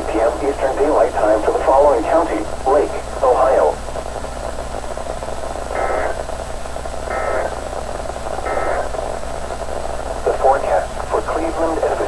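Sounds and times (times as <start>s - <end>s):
radio static: 0.0s - 12.0s
data tone bursts: 5.7s - 6.2s, 7.1s - 7.6s, 8.5s - 8.9s.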